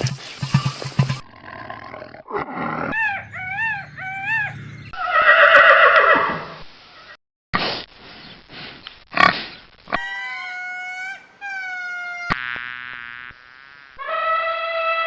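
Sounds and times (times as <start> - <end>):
animal high cries: 14.0 - 15.0
harsh animal call: 14.0 - 15.0.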